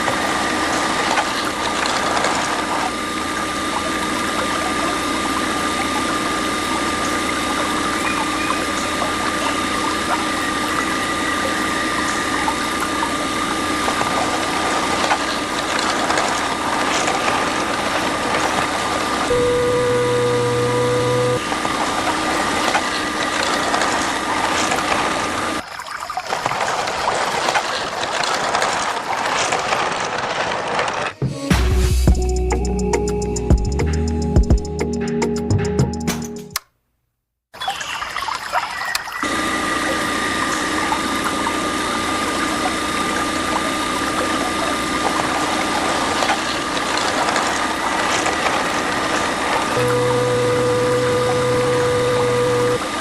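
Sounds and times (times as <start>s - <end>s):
small motor whining: 0.0s - 25.6s, 39.2s - 53.0s
water splashing and rushing: 0.0s - 31.2s, 37.6s - 53.0s.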